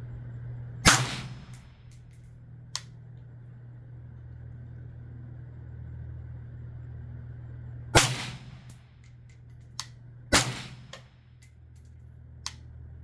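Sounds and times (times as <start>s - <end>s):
steady low hum: 0.0s - 13.0s
suppressed rifle shot: 0.9s - 1.6s, 8.0s - 8.7s, 10.4s - 11.0s
light metallic clinks: 1.5s - 2.4s, 10.9s - 12.1s.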